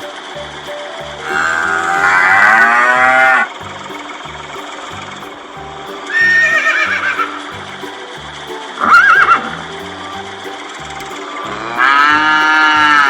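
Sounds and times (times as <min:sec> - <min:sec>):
background music with steady beat: 0:00.0 - 0:13.0.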